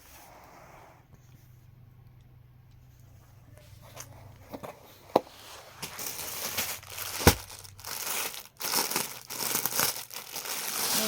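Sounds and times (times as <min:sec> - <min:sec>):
fabric crinkling and rustling: 0:05.4 - 0:11.0.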